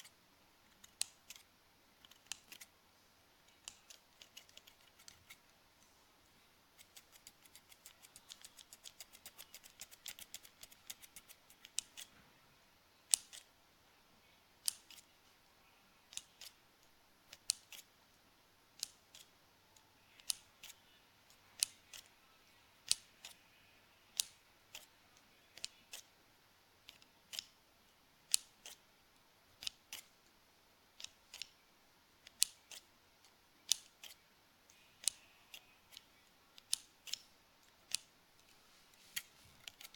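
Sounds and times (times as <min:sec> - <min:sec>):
scissors snipping: 0:03.5 - 0:05.4, 0:06.8 - 0:12.1, 0:13.1 - 0:13.5, 0:32.2 - 0:32.9.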